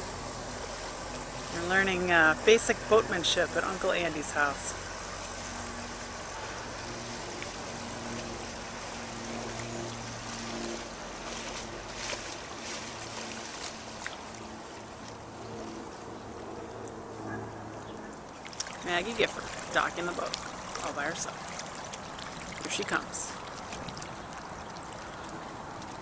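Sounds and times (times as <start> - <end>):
water hissing: 0.0 - 14.3
distant boat motor droning: 0.0 - 26.0
wind: 0.0 - 26.0.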